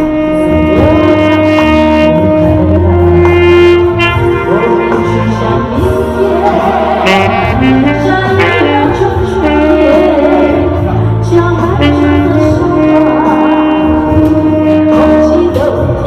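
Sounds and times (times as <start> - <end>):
bass: 0.0 - 16.0
keyboard: 0.0 - 16.0
saxophone: 0.0 - 16.0
woman singing: 7.5 - 16.0.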